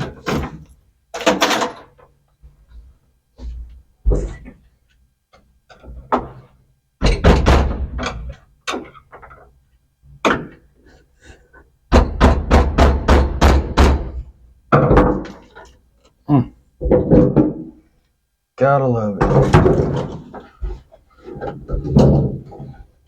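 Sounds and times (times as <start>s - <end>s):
hard knocks on a part: 11.9s - 15.3s.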